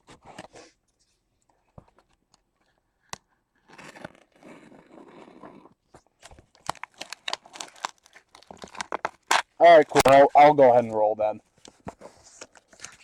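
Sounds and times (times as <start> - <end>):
cardboard crackling and knocking: 5.9 - 10.2
packing tape tearing: 6.5 - 10.2.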